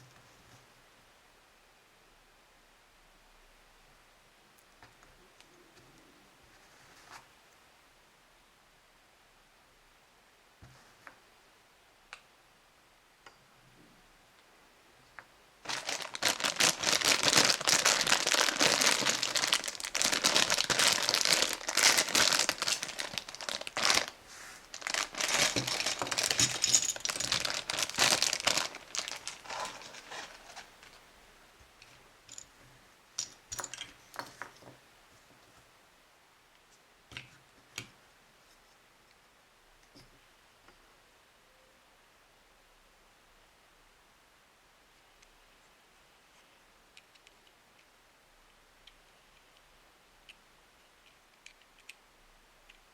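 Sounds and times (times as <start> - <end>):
clicks and rustles: 15.1 - 31.1
plastic packaging crinkling: 15.6 - 31.0.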